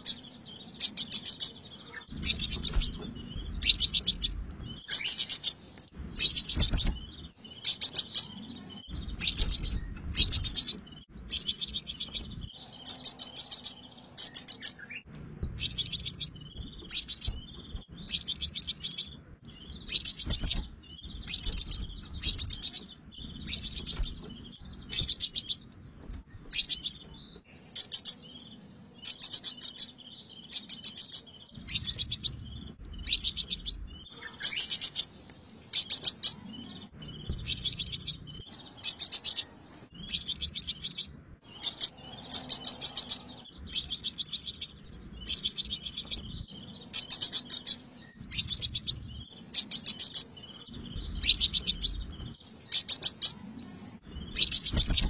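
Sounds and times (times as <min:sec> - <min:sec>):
sunbird chirping: 0:00.0 - 0:55.0.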